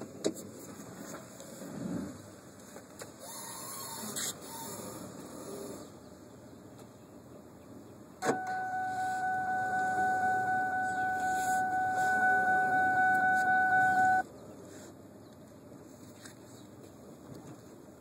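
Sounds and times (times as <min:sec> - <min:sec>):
high electronic tone: 0:08.2 - 0:14.2.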